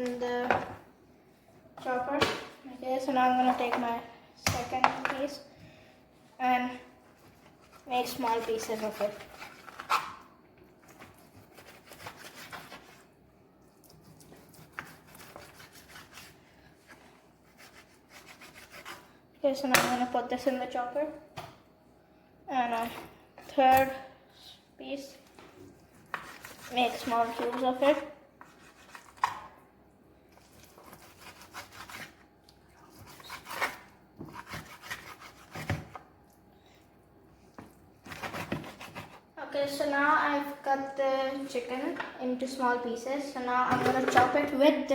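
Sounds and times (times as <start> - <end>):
knife scraping on board: 7.2 - 10.2, 11.0 - 13.0, 14.1 - 16.4, 17.5 - 19.1, 26.0 - 27.7, 30.6 - 32.2, 32.8 - 36.0, 38.0 - 39.2.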